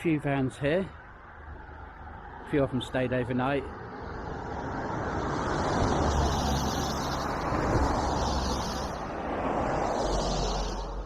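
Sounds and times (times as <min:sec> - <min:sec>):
vehicle passing by: 0:03.6 - 0:11.0.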